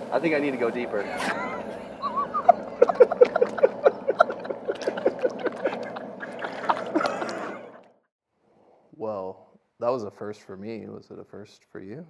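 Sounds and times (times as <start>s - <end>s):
boiling hiss: 0.0s - 2.4s.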